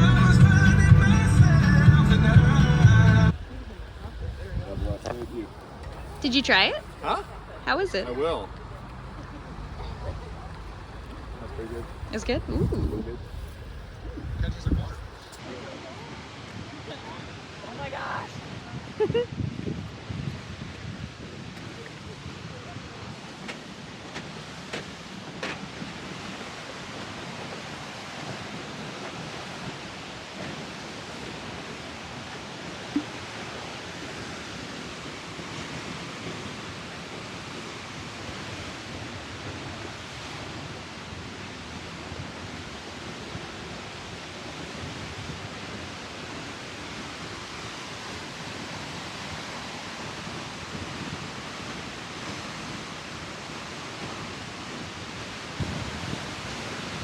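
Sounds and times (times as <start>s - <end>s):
waterfall rushing: 0.0s - 18.7s, 42.7s - 57.0s.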